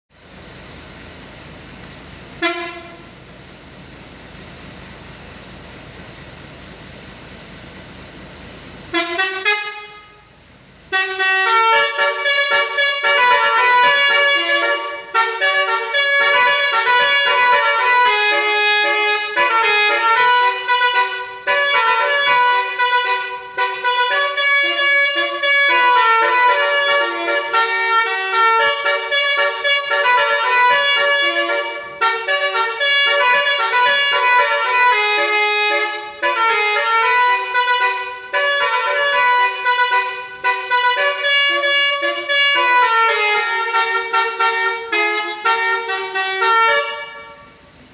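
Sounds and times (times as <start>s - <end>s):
bus melody horn playing a tune: 2.4s - 3.3s, 8.9s - 47.9s.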